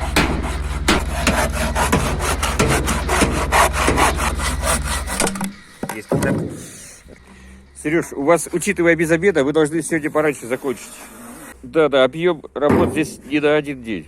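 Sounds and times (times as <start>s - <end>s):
hand saw cutting wood: 0.0s - 7.0s, 9.8s - 11.6s.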